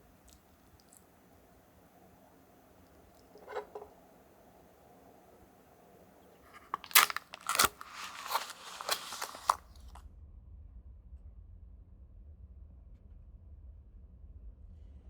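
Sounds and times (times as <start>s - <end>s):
sharp crunches and crackles: 6.4s - 10.0s.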